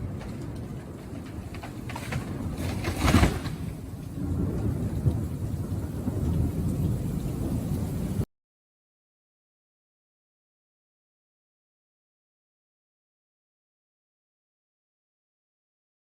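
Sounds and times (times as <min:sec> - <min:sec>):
low rumbling storm noise: 0:00.0 - 0:08.3.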